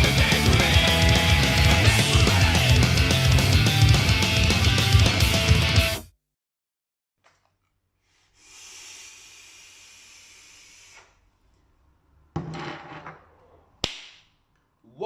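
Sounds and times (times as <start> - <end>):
long breathy hiss: 8.0 - 11.3.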